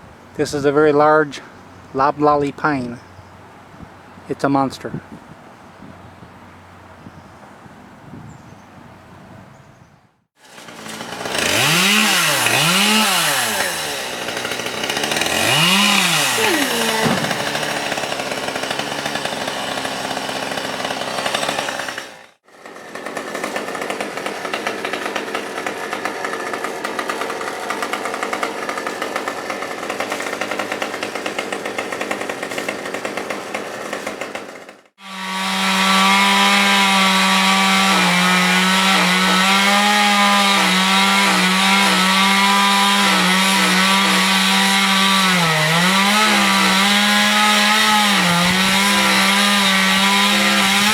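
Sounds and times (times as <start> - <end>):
chainsaw revving and cutting: 10.4 - 50.9.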